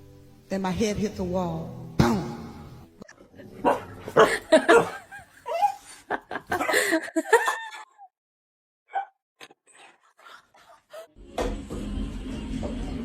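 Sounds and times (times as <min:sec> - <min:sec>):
person laughing: 0:04.2 - 0:08.1.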